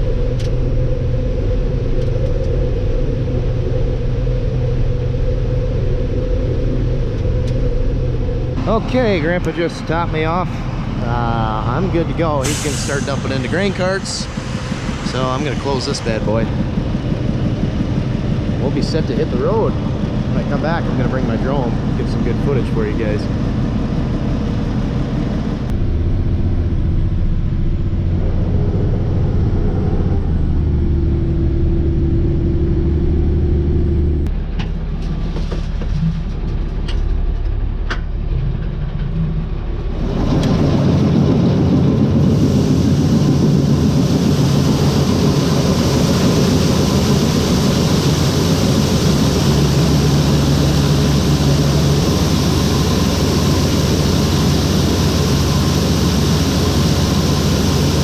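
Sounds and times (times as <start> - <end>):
heavy vehicle engine running: 0.0 - 58.0
loud even rushing noise: 5.4 - 31.4, 39.9 - 58.0.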